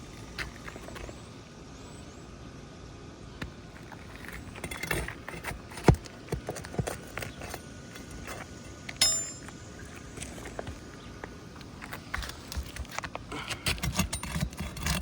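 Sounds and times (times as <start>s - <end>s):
metal tool scraping shingles: 3.8s - 9.5s, 11.9s - 15.0s
ringing metal clink: 9.0s - 9.7s.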